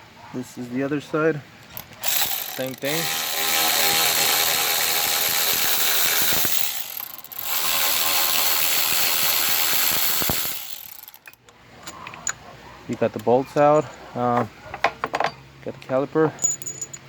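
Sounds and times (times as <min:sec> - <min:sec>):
power tool ratcheting whirr: 0:01.7 - 0:11.4.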